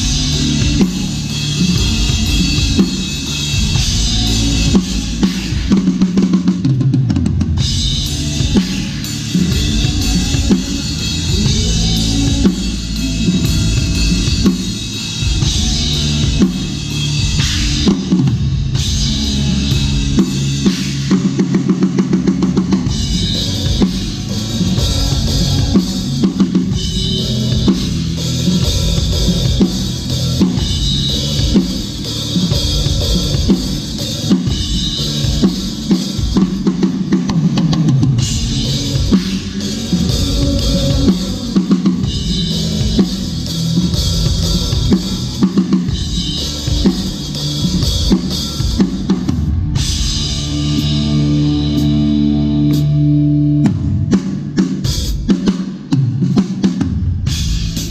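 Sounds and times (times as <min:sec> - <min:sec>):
band music: 0:00.0 - 0:57.9
drum kit groove: 0:00.0 - 0:57.9.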